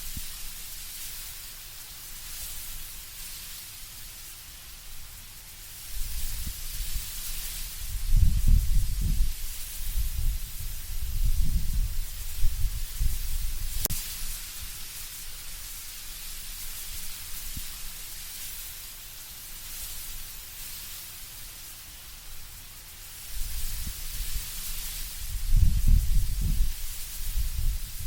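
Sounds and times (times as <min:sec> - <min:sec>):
leaves rustling in wind: 0:00.0 - 0:28.0
gusty low wind rumbles: 0:06.0 - 0:07.1, 0:07.7 - 0:13.9, 0:23.4 - 0:24.5, 0:25.1 - 0:28.0.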